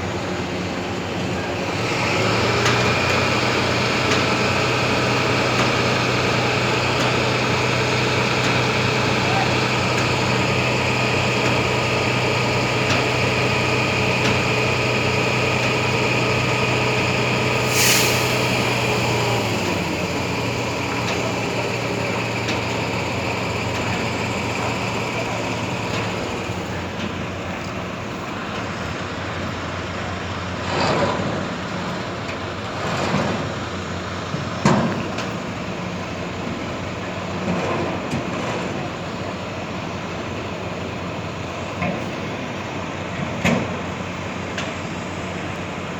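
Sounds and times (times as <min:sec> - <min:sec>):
engine humming: 0:00.0 - 0:43.1
short hiss: 0:17.6 - 0:19.3.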